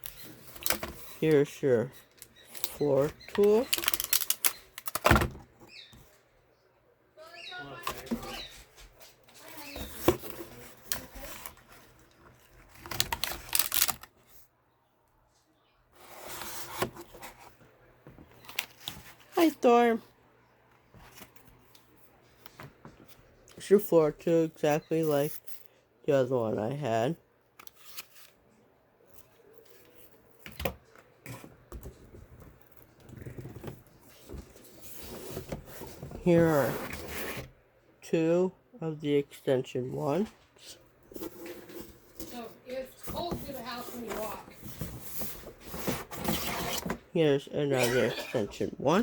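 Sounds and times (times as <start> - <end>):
rustling packaging: 0.0 - 5.1, 7.8 - 14.4.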